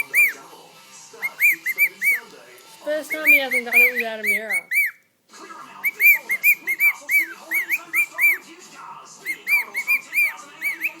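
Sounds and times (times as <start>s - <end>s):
cockatiel whistling: 0.0s - 0.4s, 1.2s - 2.3s, 3.0s - 5.0s, 5.8s - 8.5s, 9.2s - 11.0s.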